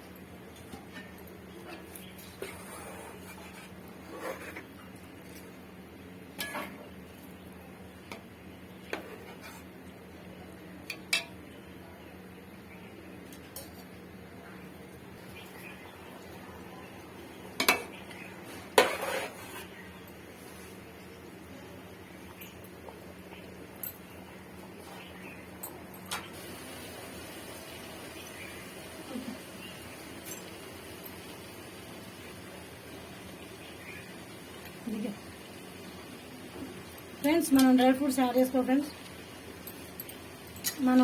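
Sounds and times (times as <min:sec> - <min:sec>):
metal utensil clinking on pot: 0:39.6 - 0:41.0.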